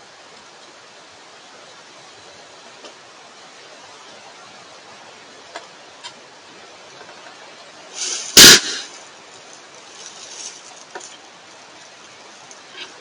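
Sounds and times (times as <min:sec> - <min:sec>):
deer sneezing: 0:08.0 - 0:09.0.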